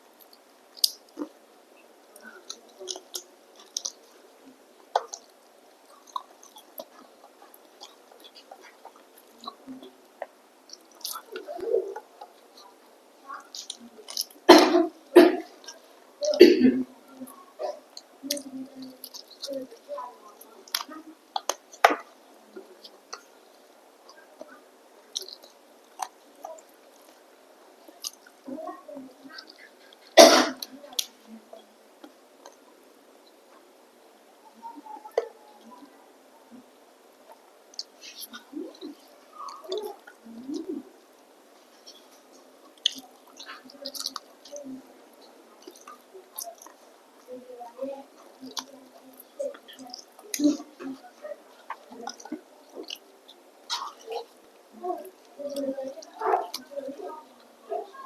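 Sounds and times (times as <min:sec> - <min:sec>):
person chewing: 0:02.2 - 0:04.2, 0:04.9 - 0:12.6, 0:13.4 - 0:16.5, 0:20.6 - 0:22.1, 0:25.1 - 0:28.5, 0:37.3 - 0:47.3, 0:48.1 - 0:56.7.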